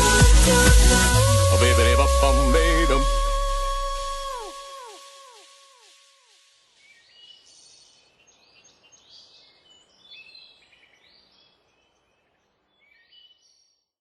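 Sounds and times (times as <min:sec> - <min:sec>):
soft hiss: 0:00.0 - 0:10.1
faint birdsong chirps: 0:06.7 - 0:14.0.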